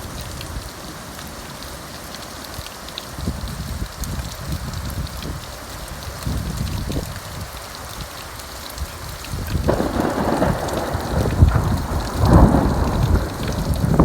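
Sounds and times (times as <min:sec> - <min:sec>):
steady rain: 0:00.0 - 0:14.0
thunder rumbling: 0:09.5 - 0:14.0.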